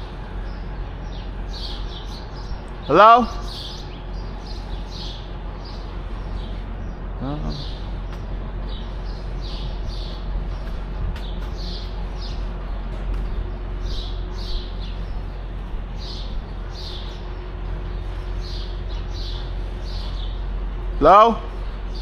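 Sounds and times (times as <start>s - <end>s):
steady low hum: 0.0s - 22.0s.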